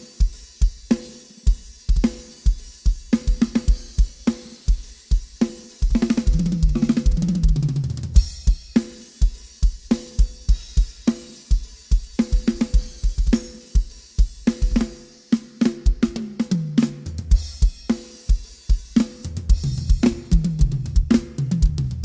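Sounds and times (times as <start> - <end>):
cymbals and hi-hat ringing: 0.0 - 7.2, 8.2 - 15.6, 17.1 - 20.6
bass drum and snare beat: 0.0 - 22.0
tom fill: 19.0 - 22.0.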